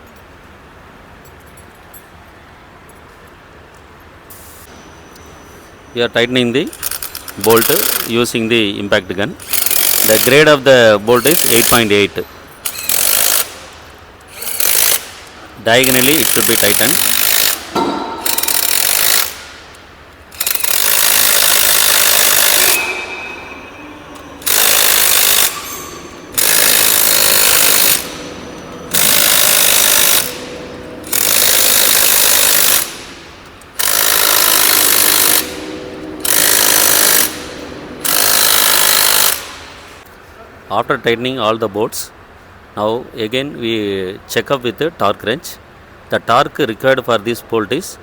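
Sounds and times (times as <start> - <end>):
impact gun hammering: 17.1 - 19.8, 20.4 - 39.8.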